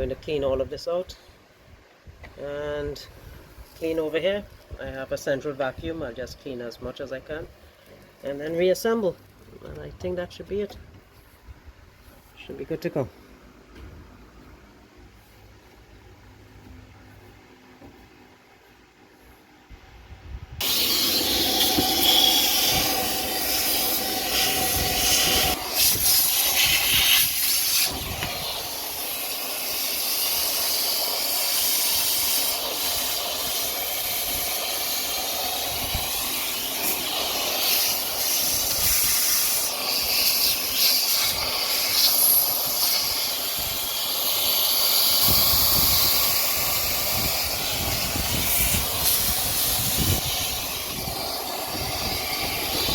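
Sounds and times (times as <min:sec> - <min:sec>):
vacuum hose sucking: 0:20.6 - 0:52.9.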